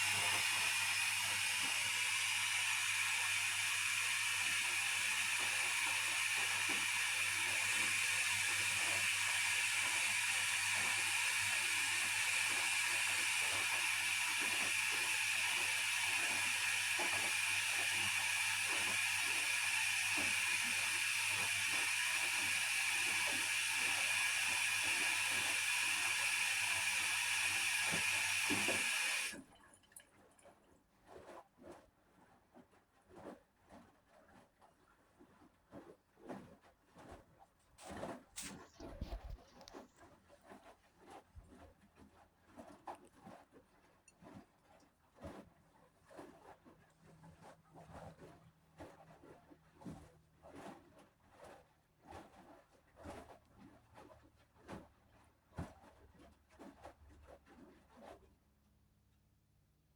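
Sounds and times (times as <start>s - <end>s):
washing machine water hissing: 0.0s - 29.4s.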